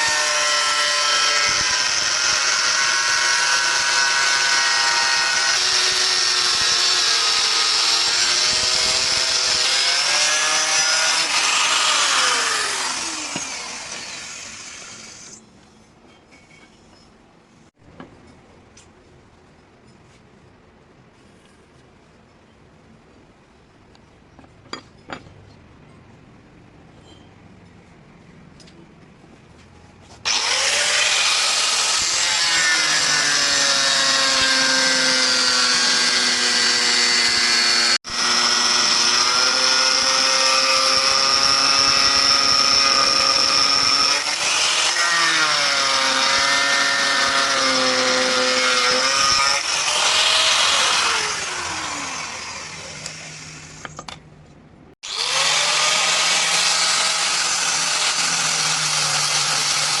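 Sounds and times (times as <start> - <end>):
electric power tool motor whining: 0.0 - 15.4, 30.3 - 53.9, 55.0 - 60.0.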